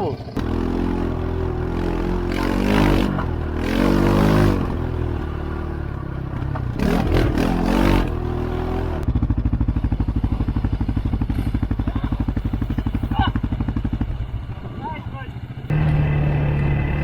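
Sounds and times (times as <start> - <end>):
atv engine revving: 0.0 - 17.0
engine chugging idle: 9.0 - 17.0.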